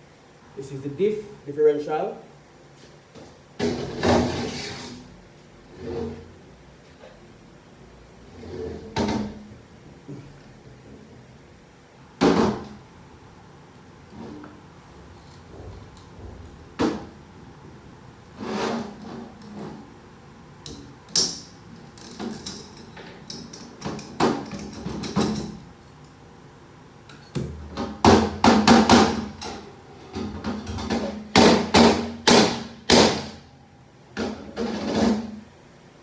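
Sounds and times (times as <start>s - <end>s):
metal parts knocking and clanking: 20.7s - 25.6s.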